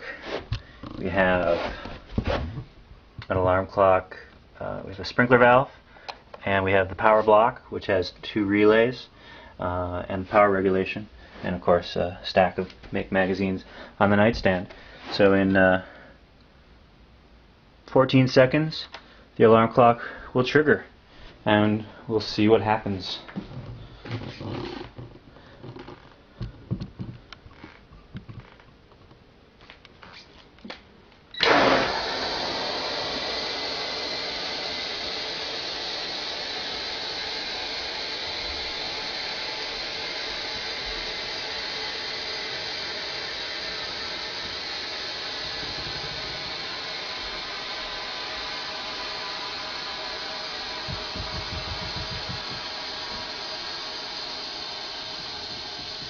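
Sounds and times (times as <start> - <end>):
compressed air hissing from valve: 31.4 - 56.0.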